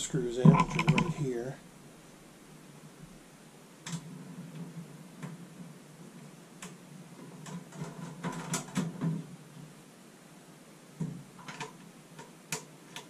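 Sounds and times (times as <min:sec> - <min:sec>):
clicks and light metallic rattling: 0:00.3 - 0:01.3.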